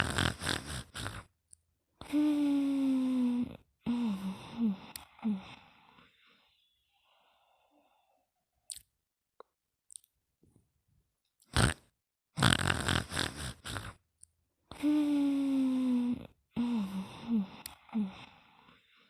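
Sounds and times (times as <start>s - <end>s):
person snoring: 0.0s - 1.3s, 2.0s - 6.2s, 11.5s - 11.8s, 12.4s - 14.0s, 14.7s - 19.0s
sharp snort: 0.0s - 1.3s, 11.5s - 14.0s.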